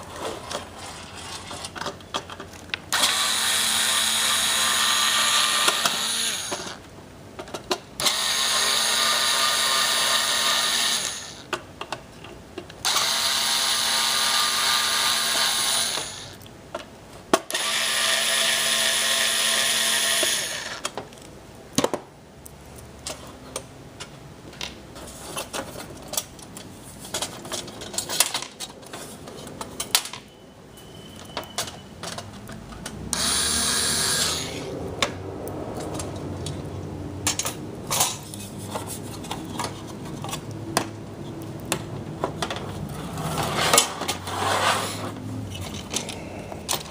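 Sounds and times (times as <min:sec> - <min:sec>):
clicks and knocks of parts: 0:01.5 - 0:03.1, 0:07.4 - 0:08.1, 0:23.0 - 0:30.3, 0:31.3 - 0:33.2, 0:37.2 - 0:44.2, 0:45.4 - 0:46.9
power tool motor running: 0:02.9 - 0:06.8, 0:08.0 - 0:11.4, 0:12.8 - 0:16.4, 0:17.5 - 0:20.8, 0:33.1 - 0:34.7.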